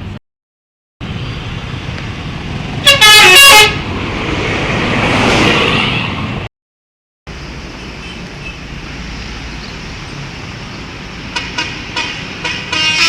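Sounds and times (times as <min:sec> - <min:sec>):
traffic noise: 0:00.0 - 0:00.2, 0:01.0 - 0:06.5, 0:07.3 - 0:13.0
bus passing: 0:01.0 - 0:06.5, 0:07.3 - 0:13.0
musical bus horn: 0:02.8 - 0:03.8, 0:11.3 - 0:13.0.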